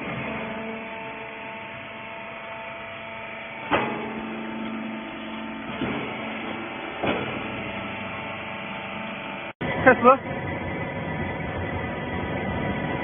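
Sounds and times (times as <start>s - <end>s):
baler machine humming: 0.0s - 13.0s
machine clunk: 3.6s - 8.4s.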